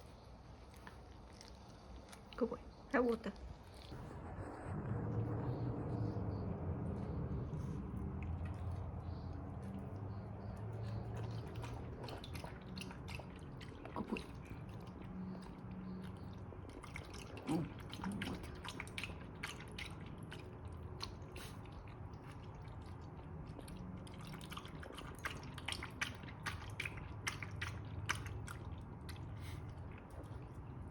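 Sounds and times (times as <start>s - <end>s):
low steady hum: 0.0s - 30.9s
dog lapping water: 5.5s - 30.9s.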